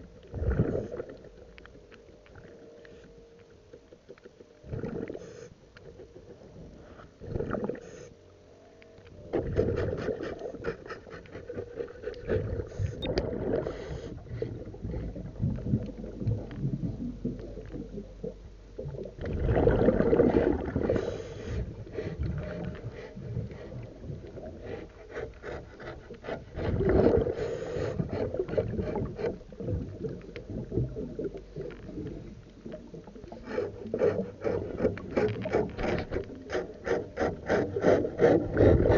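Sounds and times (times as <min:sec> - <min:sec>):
underwater scraping on boat hull: 0:19.4 - 0:30.0, 0:33.3 - 0:38.9.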